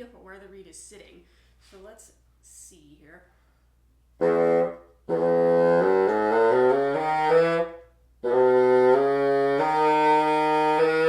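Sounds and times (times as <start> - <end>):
bassoon playing a scale: 4.2 - 11.0.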